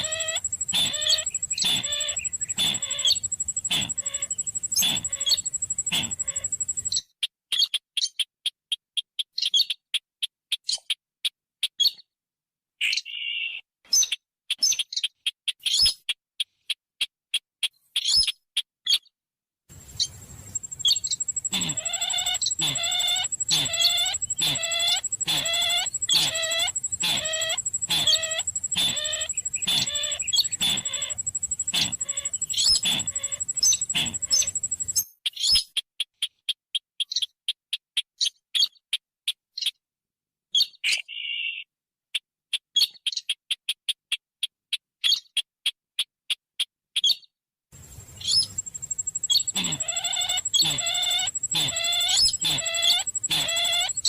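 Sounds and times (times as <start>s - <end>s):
steady high whine: 0.0s - 6.9s, 19.8s - 35.0s, 47.8s - 54.0s
bird calling down-slurred notes: 0.0s - 7.1s, 19.8s - 35.0s, 48.2s - 54.0s
rapid clicking and chattering chirps: 0.0s - 12.0s, 13.9s - 19.0s, 19.7s - 39.8s, 42.1s - 47.1s, 47.8s - 54.0s.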